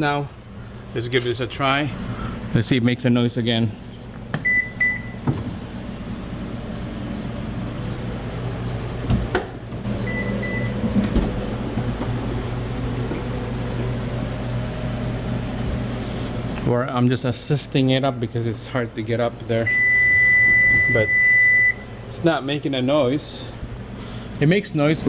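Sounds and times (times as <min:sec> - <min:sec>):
liftgate motor humming: 0:04.1 - 0:16.7
liftgate warning beeper: 0:04.4 - 0:05.4, 0:10.0 - 0:10.9, 0:19.6 - 0:21.9.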